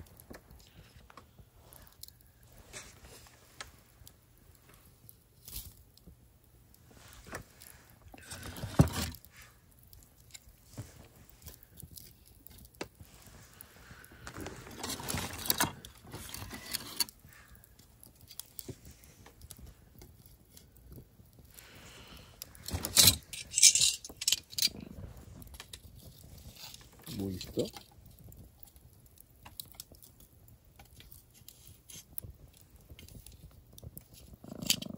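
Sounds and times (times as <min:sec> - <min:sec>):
small metal pieces jingling: 0:22.8 - 0:24.8.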